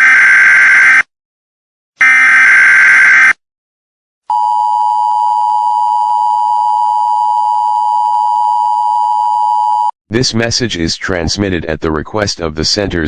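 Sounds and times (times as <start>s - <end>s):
two-tone alarm: 2.0s - 3.4s.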